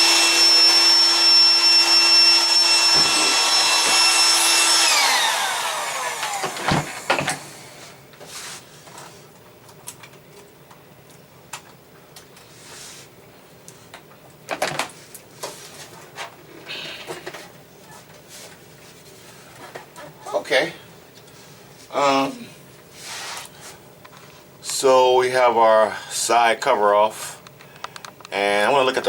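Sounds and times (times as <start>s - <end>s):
electric motor whining: 0.0s - 7.7s.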